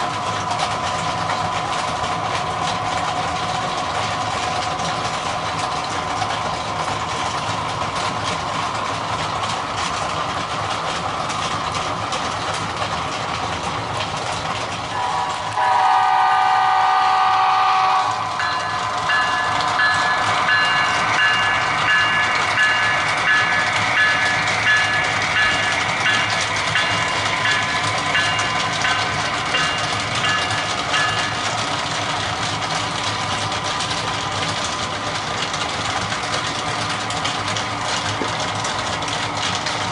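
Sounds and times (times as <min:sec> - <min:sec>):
model locomotive engine sound: 0:00.0 - 0:39.9
locomotive horn blast: 0:14.9 - 0:18.5
bell ringing: 0:18.3 - 0:31.6.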